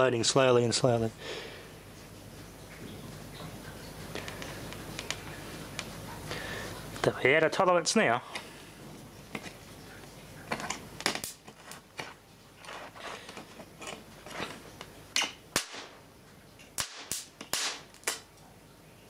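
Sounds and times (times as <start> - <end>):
electric sparks snapping and cracking: 10.6 - 13.0, 15.2 - 16.0, 16.7 - 18.4.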